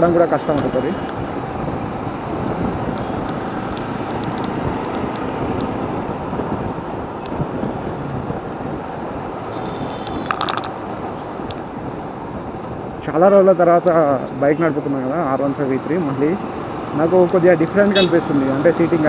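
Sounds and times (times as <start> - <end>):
wind and road noise: 0.0 - 19.0
motorcycle engine running: 17.9 - 19.0.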